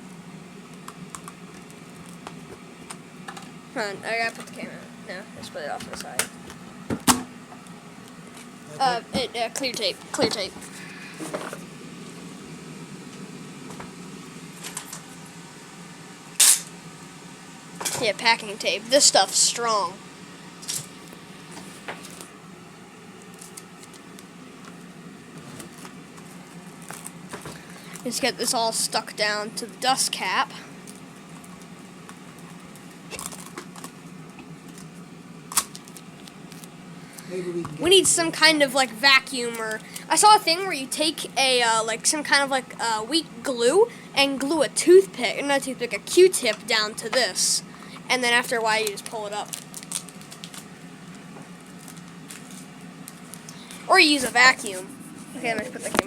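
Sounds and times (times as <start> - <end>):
low room hum: 0.0 - 56.0
packing tape crinkling: 23.2 - 24.8, 25.4 - 28.1, 30.8 - 36.8, 48.8 - 54.6
packing tape ripping off roll: 32.8 - 34.0, 35.5 - 36.7, 49.4 - 50.7, 51.6 - 53.6.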